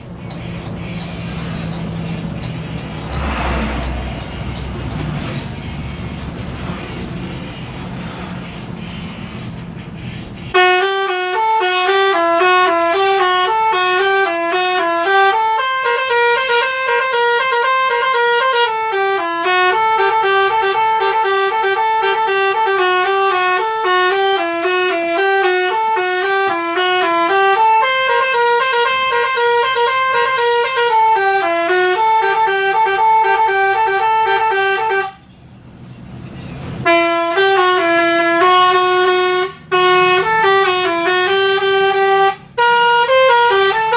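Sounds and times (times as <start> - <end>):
vehicle running noise: 0.0 - 43.9
multi-toned musical horn melody: 10.5 - 35.2, 36.8 - 43.9.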